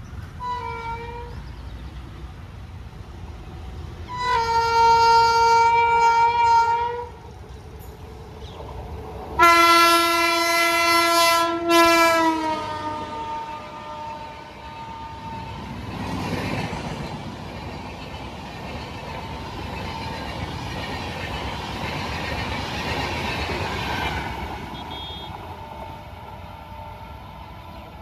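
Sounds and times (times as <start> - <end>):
moving train rumble: 0.0 - 28.0
locomotive horn honking: 0.4 - 1.3, 4.1 - 7.1, 9.4 - 15.6, 24.6 - 25.9.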